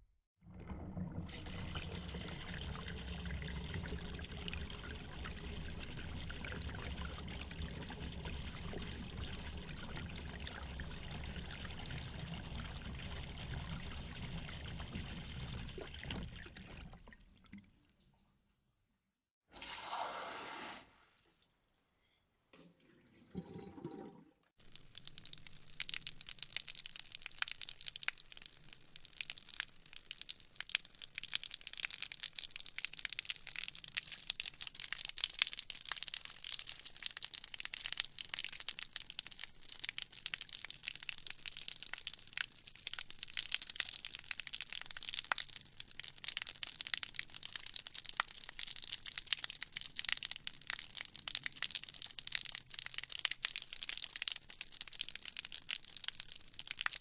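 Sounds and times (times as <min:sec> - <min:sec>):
crackling fizz of tiny pops: 0:24.6 - 0:57.0.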